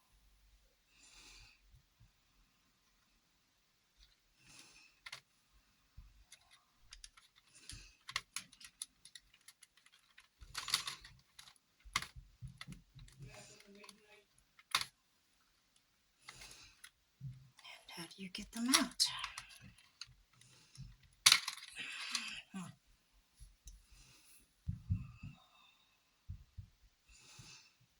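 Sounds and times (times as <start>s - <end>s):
packaging clicks and taps: 6.3s - 14.9s.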